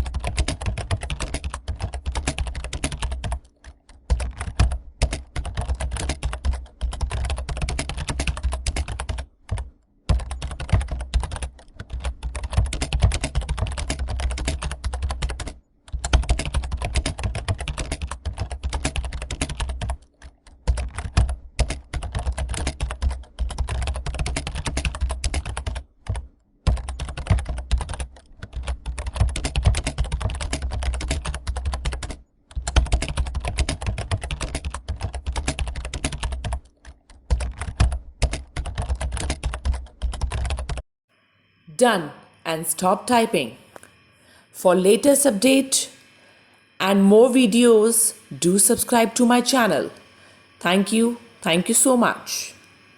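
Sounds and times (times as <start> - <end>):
rapid keyboard typing: 0.0 - 40.8.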